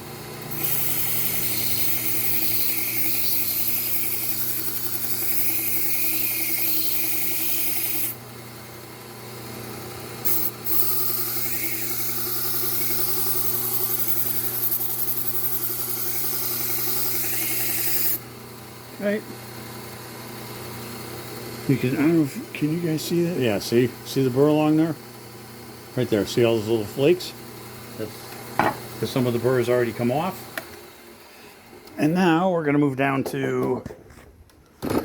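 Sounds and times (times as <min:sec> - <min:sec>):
belt sander motor hum: 0:00.0 - 0:32.2
knife grinding on belt sander: 0:00.4 - 0:08.2, 0:10.2 - 0:18.2.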